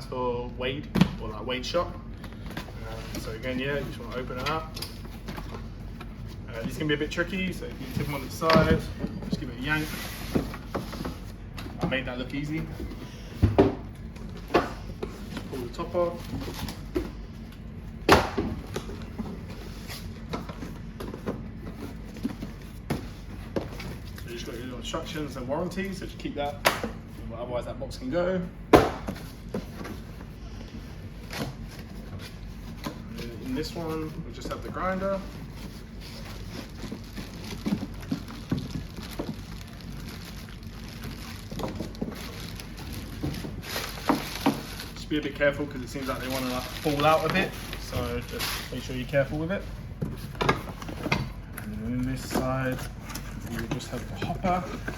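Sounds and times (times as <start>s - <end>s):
cardboard rustling: 2.2s - 24.6s, 29.1s - 54.9s
packaging rustling and tapping: 34.4s - 45.0s.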